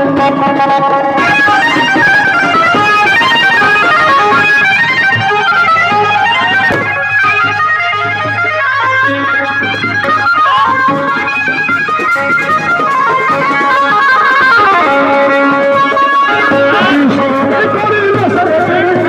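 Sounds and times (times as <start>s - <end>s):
fast instrumental music: 0.0s - 19.0s.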